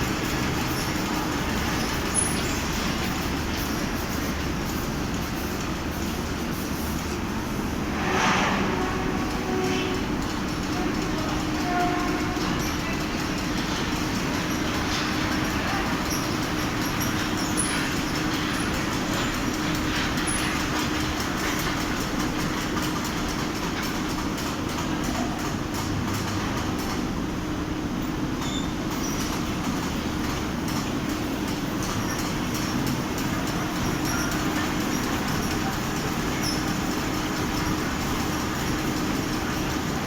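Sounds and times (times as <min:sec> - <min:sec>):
fabric spreading machine rumbling: 0:00.0 - 0:22.6, 0:29.0 - 0:40.0.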